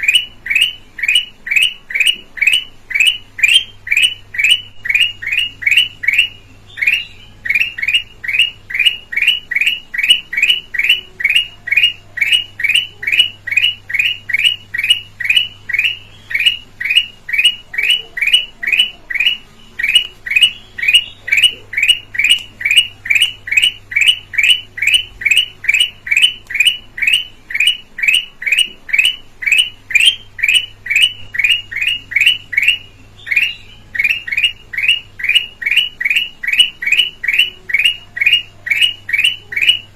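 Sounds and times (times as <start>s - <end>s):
bulbul calling: 0.0s - 39.9s.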